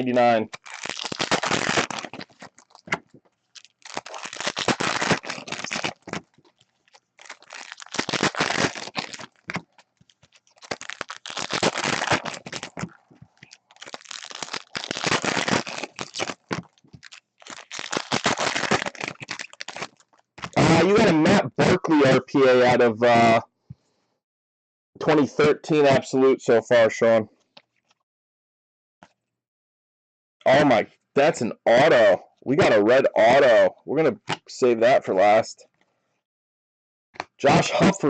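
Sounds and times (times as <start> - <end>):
card pack wrappers crinkling: 0.0 - 21.0.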